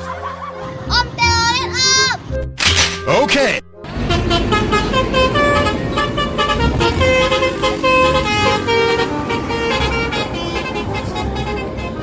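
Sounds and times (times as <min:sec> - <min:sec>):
low engine rumble: 0:03.9 - 0:12.0
melodic bus horn: 0:03.9 - 0:12.0.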